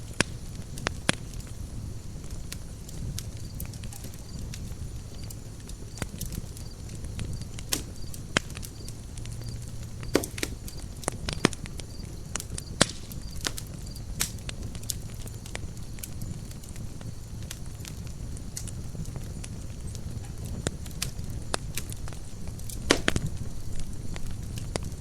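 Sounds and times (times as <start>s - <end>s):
campfire crackling and popping: 0.0s - 25.0s
low rumble of fire: 0.0s - 25.0s.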